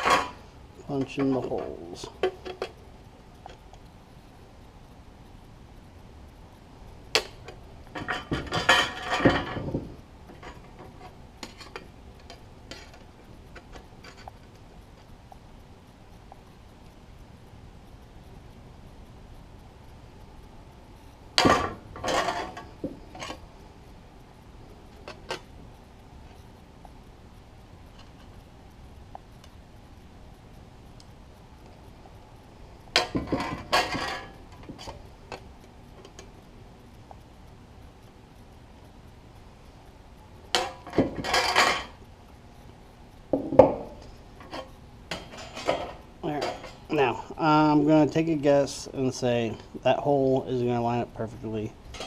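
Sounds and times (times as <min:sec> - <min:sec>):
metal tools clanking: 0:00.0 - 0:02.8, 0:08.0 - 0:11.8, 0:21.4 - 0:23.4, 0:43.4 - 0:47.4
rattling clatter: 0:21.4 - 0:23.4.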